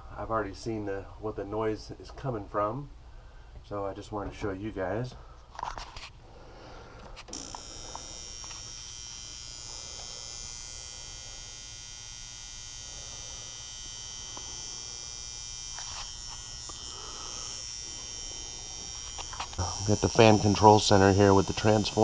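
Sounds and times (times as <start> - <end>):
transformer buzzing: 7.3 - 22.0.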